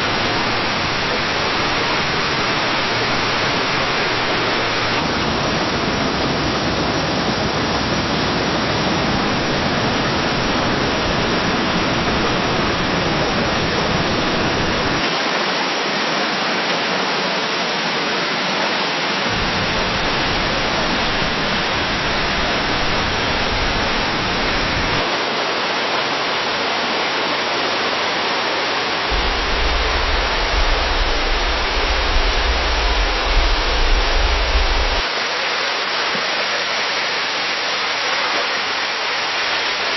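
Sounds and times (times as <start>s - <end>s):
deep water rumble: 0.0s - 15.0s, 19.3s - 25.0s, 29.1s - 35.0s
waterfall rushing: 0.0s - 39.9s.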